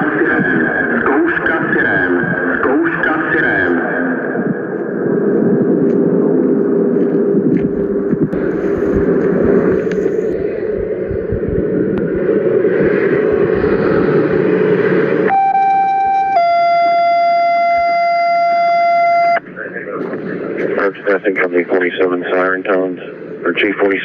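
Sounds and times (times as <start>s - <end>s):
noisy rumble: 0.0s - 24.0s
buzzy electronic siren tone: 15.1s - 19.5s.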